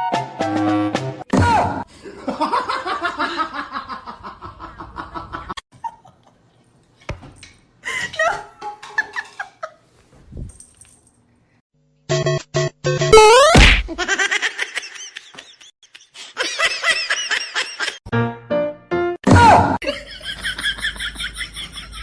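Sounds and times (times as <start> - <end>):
laughter in quick bursts: 13.9 - 18.0.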